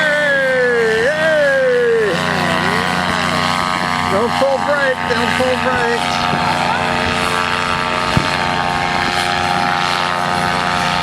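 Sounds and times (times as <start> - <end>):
paramotor engine and propeller: 0.0 - 11.0
wind noise: 5.6 - 11.0.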